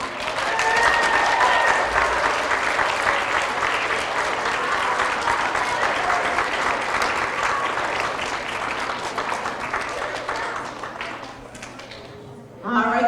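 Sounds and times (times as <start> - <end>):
children cheering: 0.0 - 8.9
children applauding: 0.0 - 12.2.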